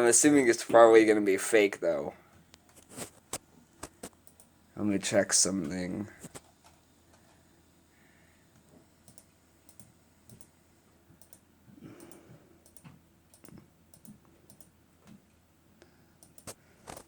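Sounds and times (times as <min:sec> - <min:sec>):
computer keyboard typing: 0:16.2 - 0:16.6.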